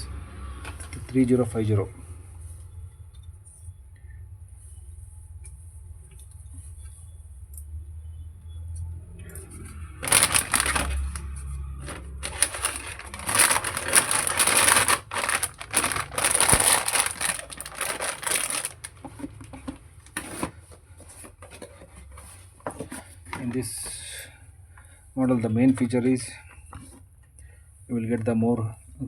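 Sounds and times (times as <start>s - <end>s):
packaging rustling and crinkling: 9.9s - 11.2s, 11.8s - 19.3s, 20.0s - 23.0s.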